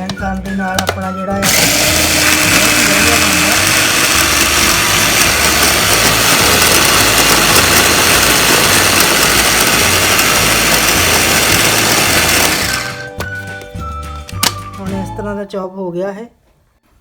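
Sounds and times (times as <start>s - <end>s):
electric grinder whirring: 1.4s - 13.1s.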